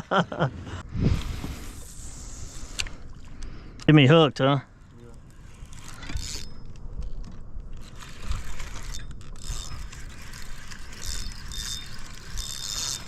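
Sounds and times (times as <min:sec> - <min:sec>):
wind rumble on microphone: 0:00.6 - 0:02.7
fishing reel ratcheting: 0:05.2 - 0:13.0.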